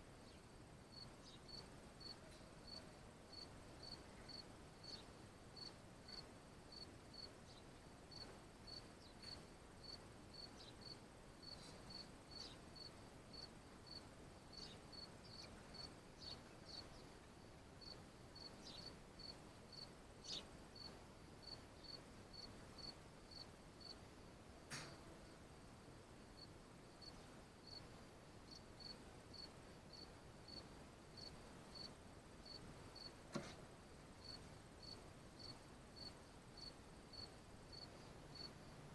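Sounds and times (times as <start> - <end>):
faint high chirping: 0.2 - 24.0.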